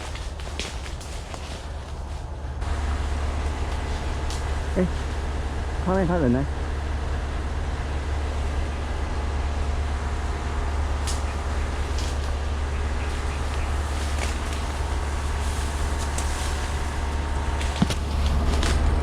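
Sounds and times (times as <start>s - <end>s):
rustles: 0.0s - 5.6s, 10.8s - 19.0s.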